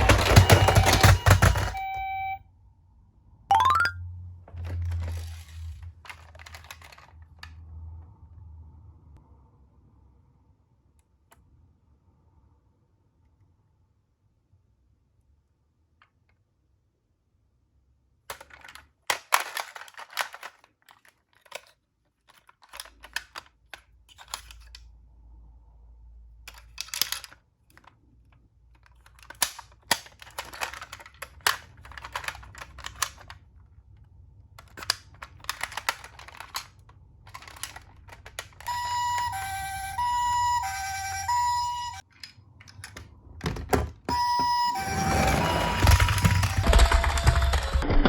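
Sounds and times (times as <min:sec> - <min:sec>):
plastic toy car clicking and rattling: 0:00.0 - 0:02.2, 0:04.5 - 0:08.0, 0:18.2 - 0:25.0, 0:26.4 - 0:43.9, 0:45.8 - 0:48.0
two-tone ambulance siren: 0:00.0 - 0:02.4, 0:38.6 - 0:42.0, 0:44.1 - 0:48.0.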